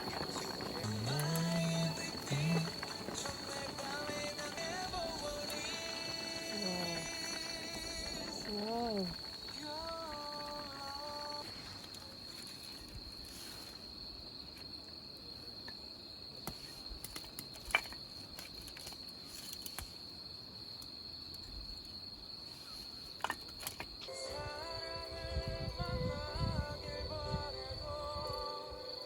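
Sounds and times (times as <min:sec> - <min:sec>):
music: 0:00.0 - 0:11.5, 0:24.1 - 0:29.0
crickets chirring: 0:00.0 - 0:29.0.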